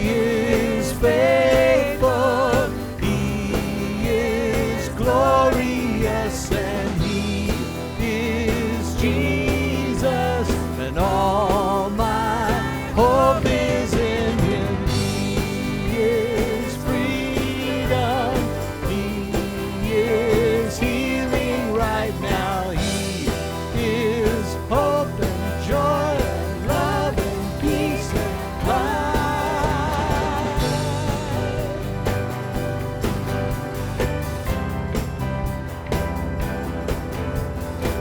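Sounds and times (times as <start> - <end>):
worship band playing: 0.0 - 38.0.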